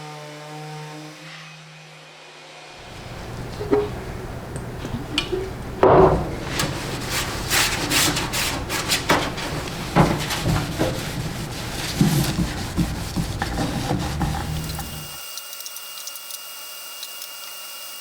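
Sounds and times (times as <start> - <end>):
short scraping strokes: 6.2 - 15.2.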